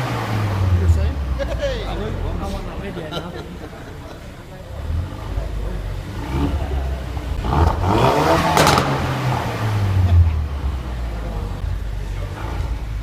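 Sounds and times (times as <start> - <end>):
car engine revving: 0.0 - 13.0
exhaust crack: 0.0 - 13.0.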